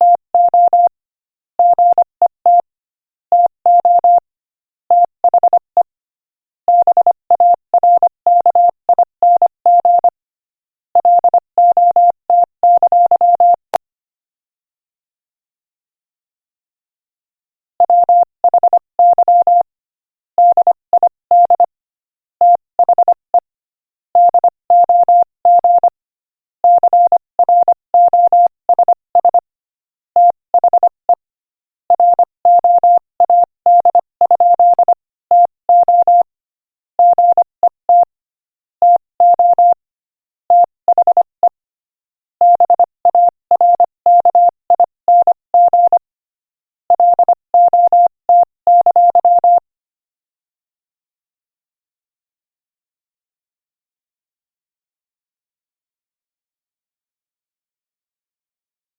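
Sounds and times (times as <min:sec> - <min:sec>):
morse code beeps: 0:00.0 - 0:00.9, 0:01.6 - 0:02.7, 0:03.4 - 0:04.2, 0:06.7 - 0:10.2, 0:11.0 - 0:13.6, 0:17.8 - 0:19.7, 0:20.4 - 0:21.7, 0:22.4 - 0:23.2, 0:24.2 - 0:26.0, 0:26.7 - 0:29.4, 0:30.2 - 0:31.2, 0:31.9 - 0:36.3, 0:37.0 - 0:38.1, 0:38.8 - 0:39.8, 0:40.5 - 0:41.6, 0:42.4 - 0:46.1, 0:46.9 - 0:49.6.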